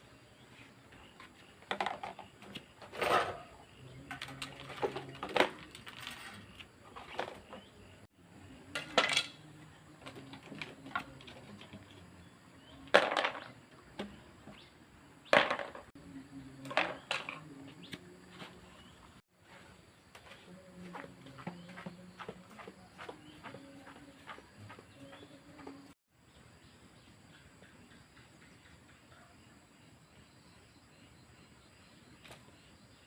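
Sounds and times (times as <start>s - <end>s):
metal tools clinking and knocking: 8.8s - 12.0s.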